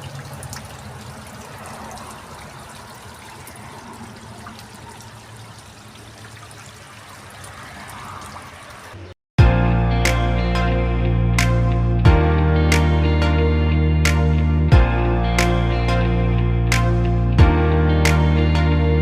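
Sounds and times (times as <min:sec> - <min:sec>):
water splashes and drips: 0:00.0 - 0:09.2
water trickling: 0:00.0 - 0:09.2.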